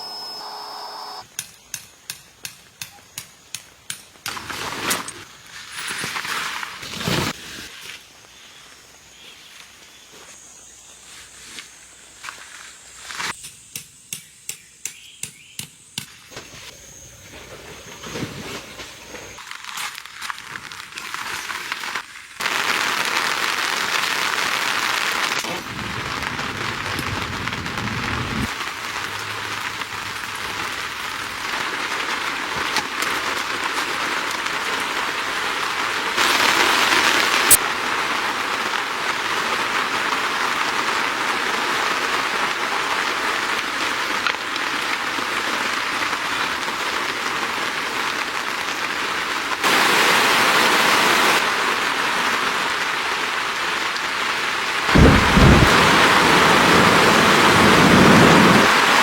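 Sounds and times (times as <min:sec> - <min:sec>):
rain falling on a surface: 0:19.4 - 0:59.0.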